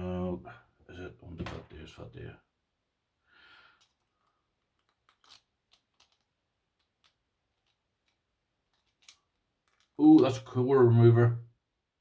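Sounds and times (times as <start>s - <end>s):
small objects clicking and tapping: 3.8s - 10.3s.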